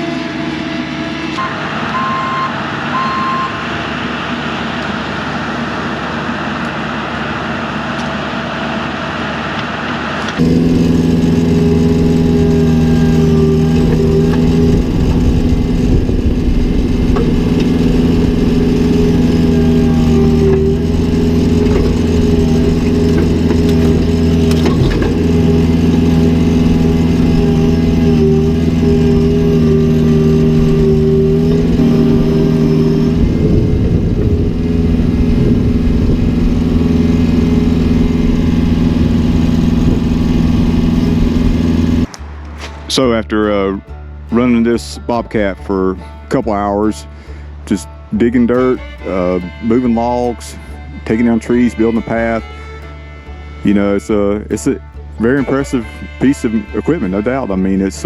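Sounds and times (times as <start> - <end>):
diesel engine running: 0.0 - 58.0
short electronic beeps: 1.4 - 3.6.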